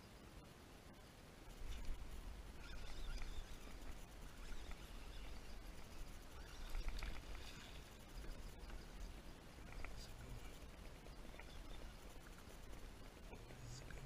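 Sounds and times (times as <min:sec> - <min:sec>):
faint light ticks: 0:01.7 - 0:02.0, 0:06.0 - 0:12.5.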